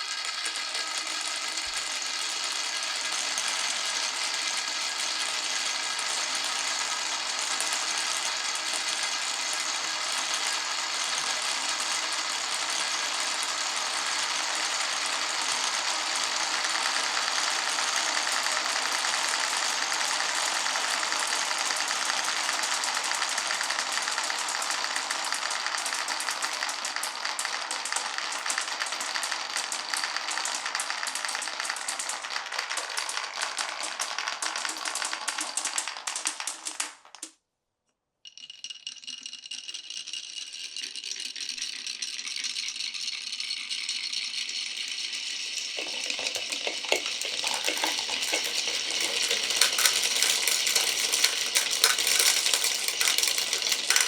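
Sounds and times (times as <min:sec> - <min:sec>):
marbles rattling down wooden run: 0:00.0 - 0:21.4, 0:38.3 - 0:54.0.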